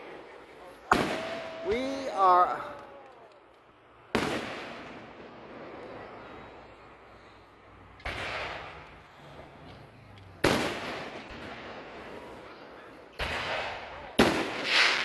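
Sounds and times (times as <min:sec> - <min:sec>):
firework shells bursting: 0:13.2 - 0:15.0.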